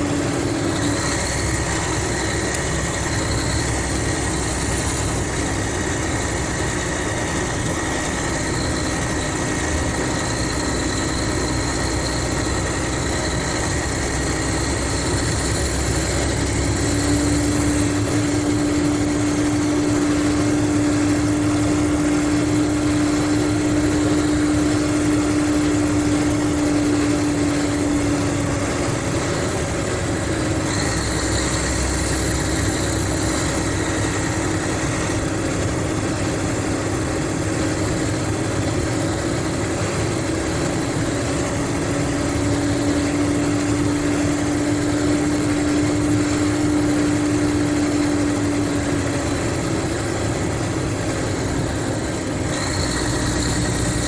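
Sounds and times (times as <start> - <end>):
diesel engine droning: 0.0 - 54.0
strong steady whine: 0.0 - 54.0.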